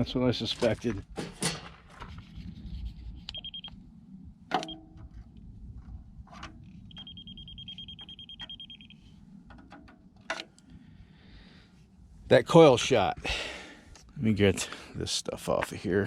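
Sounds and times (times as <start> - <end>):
high electronic beep: 3.3 - 3.7, 6.9 - 9.0.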